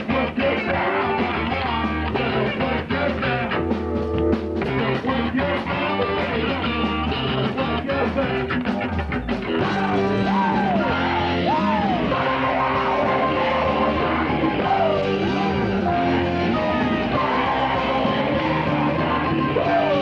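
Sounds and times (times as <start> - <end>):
rock band playing: 0.0 - 20.0.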